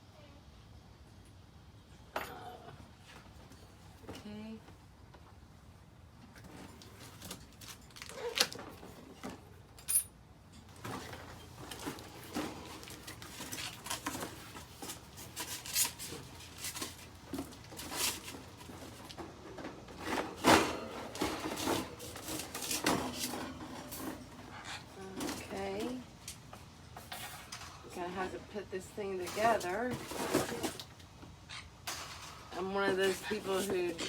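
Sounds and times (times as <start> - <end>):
packaging clicks knocks and rustling: 7.1 - 8.8.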